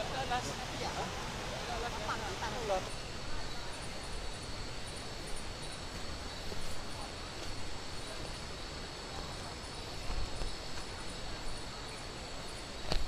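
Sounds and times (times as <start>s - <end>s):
waterfall rushing: 0.0s - 2.9s.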